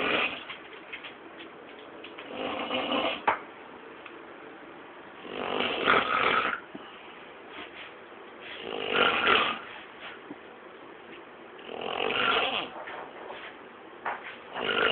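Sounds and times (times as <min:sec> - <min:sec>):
man snoring: 0:05.2 - 0:06.6, 0:08.6 - 0:09.6, 0:11.7 - 0:12.7, 0:14.6 - 0:14.9.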